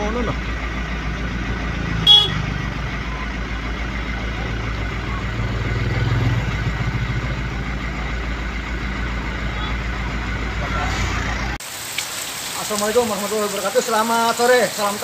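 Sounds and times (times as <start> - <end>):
vehicle engine running: 0.0 - 11.6.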